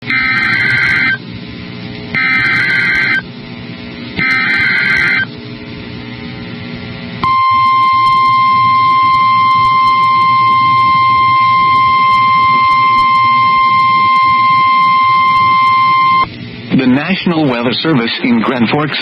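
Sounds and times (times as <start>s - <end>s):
steady warning alert tone: 0.0s - 1.2s, 2.2s - 3.2s, 4.2s - 5.3s, 7.2s - 16.3s
low radio hum: 0.0s - 19.0s
screeching digital data tones: 0.1s - 1.2s, 2.2s - 3.2s, 4.2s - 5.3s, 7.2s - 16.3s.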